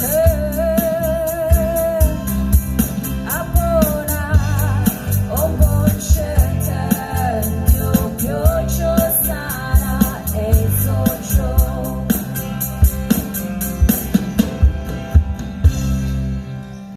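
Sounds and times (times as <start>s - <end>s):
person singing with vibrato: 0.0s - 12.6s
band playing: 0.0s - 16.9s
bass: 0.0s - 16.9s
drum kit: 0.0s - 16.9s.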